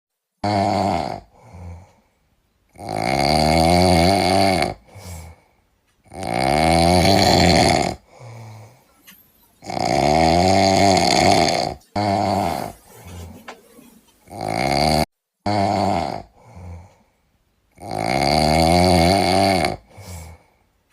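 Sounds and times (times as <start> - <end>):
man snoring loudly: 0.4 - 2.0, 2.7 - 5.4, 6.0 - 8.8, 9.6 - 13.4, 14.2 - 17.0, 17.7 - 20.5
quiet breathing: 1.2 - 2.8, 4.7 - 6.1, 8.0 - 9.6, 16.2 - 17.6, 19.6 - 20.9.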